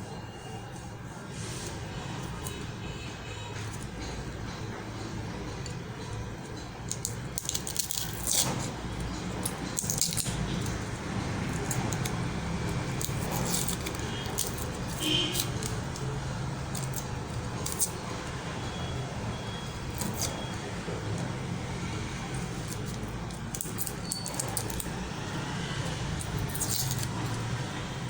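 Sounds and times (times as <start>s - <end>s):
small hard objects clinking: 6.8s - 8.6s, 9.2s - 10.9s, 11.5s - 18.0s, 22.7s - 25.0s, 26.2s - 27.4s.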